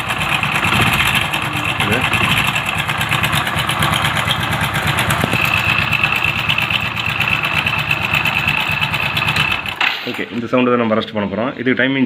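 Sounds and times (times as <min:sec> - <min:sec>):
steady high whine: 0:00.0 - 0:07.9
motorcycle engine idling with rattle: 0:00.0 - 0:10.4.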